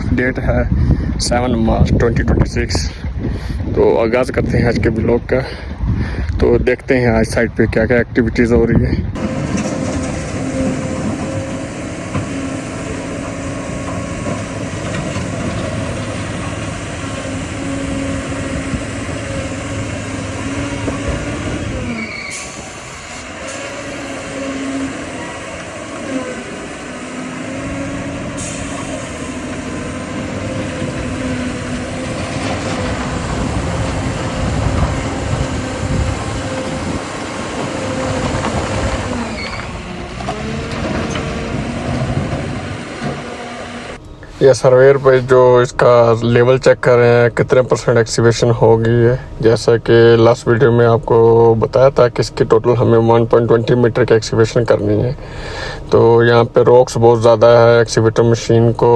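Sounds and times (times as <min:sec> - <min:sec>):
excavator digging rocky ground: 0:09.2 - 0:44.5.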